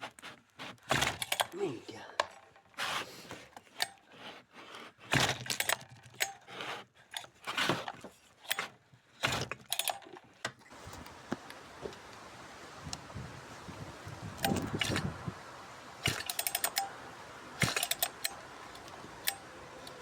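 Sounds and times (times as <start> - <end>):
metal parts and tools clinking: 5.3 - 6.5, 9.5 - 10.3, 16.0 - 17.0, 17.6 - 20.0.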